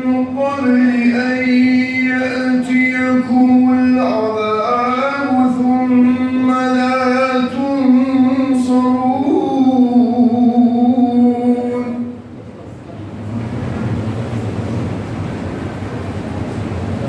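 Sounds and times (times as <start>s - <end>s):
man chanting recitation: 0.0s - 12.2s.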